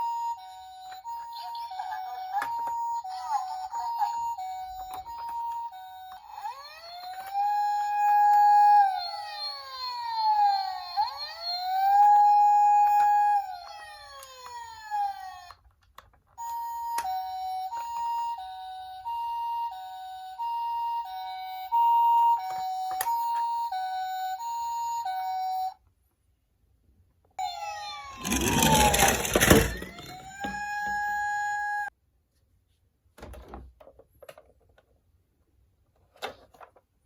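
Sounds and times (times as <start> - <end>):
two-tone ambulance siren: 0.0 - 15.6, 16.4 - 25.8, 27.4 - 31.9
police car siren wailing: 1.8 - 15.6, 27.4 - 31.9.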